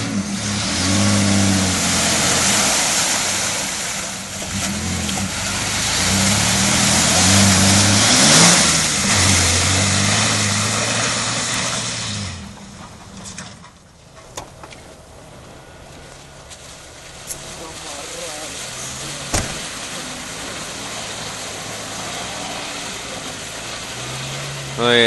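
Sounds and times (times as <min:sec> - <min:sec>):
off-road engine revving: 0:00.0 - 0:25.0.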